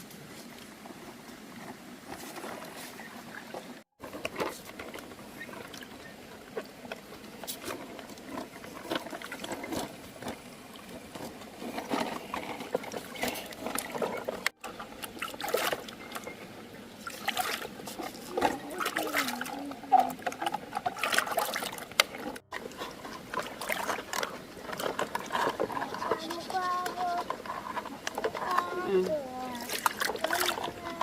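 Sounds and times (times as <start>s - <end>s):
water splashing and sloshing: 0.0s - 31.0s
toy cars knocking: 24.8s - 31.0s.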